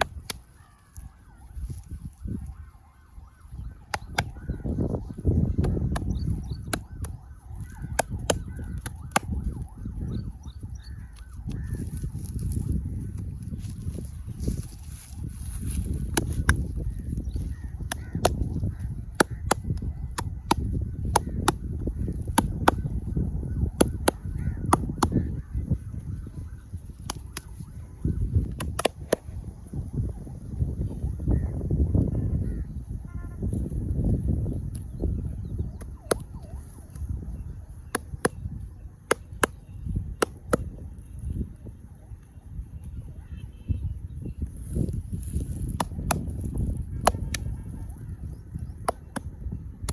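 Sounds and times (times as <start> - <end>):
hands slapping skin: 0.0 - 0.5, 3.9 - 4.4, 5.6 - 9.4, 26.9 - 27.7, 28.4 - 29.3, 35.8 - 37.1.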